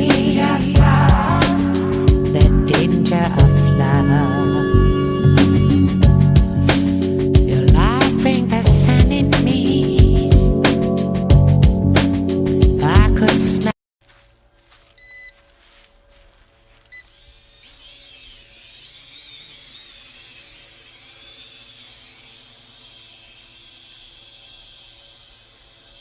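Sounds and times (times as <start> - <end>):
short electronic beeps: 15.0 - 15.4
drone propellers whirring: 16.9 - 26.0.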